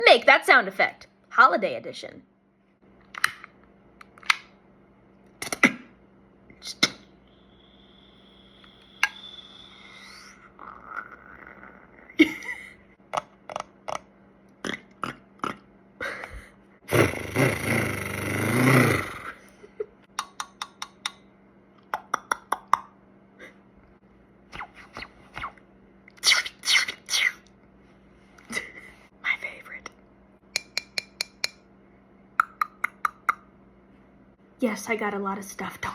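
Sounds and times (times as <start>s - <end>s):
beatbox mouth clicks and pops: 8.6s - 9.4s, 13.1s - 15.6s, 21.8s - 22.9s, 32.4s - 33.5s.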